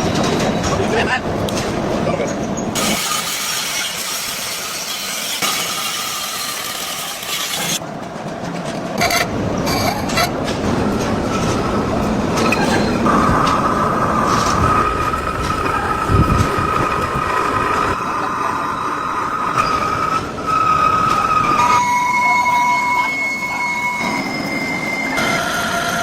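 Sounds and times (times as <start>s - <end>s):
machinery running: 0.0s - 26.0s
high squeal: 12.4s - 26.0s.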